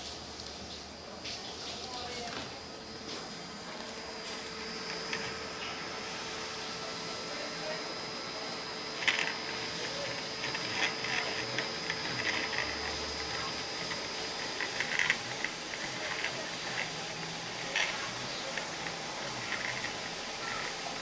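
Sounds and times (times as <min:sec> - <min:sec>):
cnc machine high whine: 0:00.2 - 0:21.0
clicks and scrapes of moving parts: 0:09.0 - 0:20.7.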